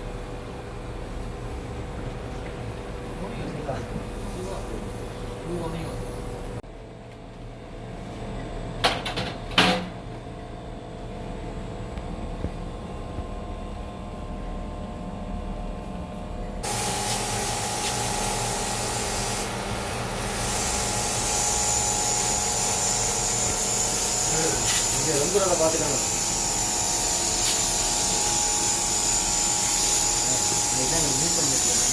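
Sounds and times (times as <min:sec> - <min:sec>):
steady hum: 0:00.0 - 0:31.9
high-pressure water jet hiss: 0:16.6 - 0:31.9.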